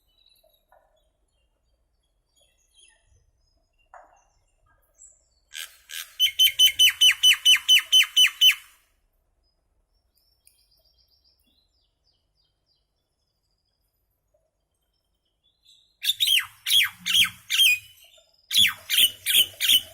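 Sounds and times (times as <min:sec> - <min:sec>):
myna bird calling: 0:05.5 - 0:08.7, 0:16.0 - 0:19.9.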